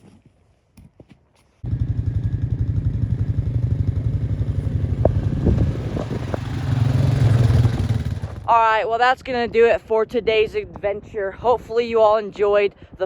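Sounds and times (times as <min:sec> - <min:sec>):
vehicle engine running: 0:01.6 - 0:08.5.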